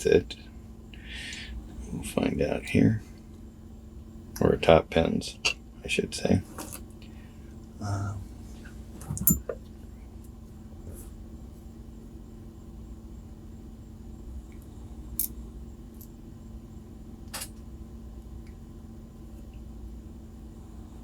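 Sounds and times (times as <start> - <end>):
low hum: 0.0 - 21.0
metal lock pins clicking: 9.2 - 9.5.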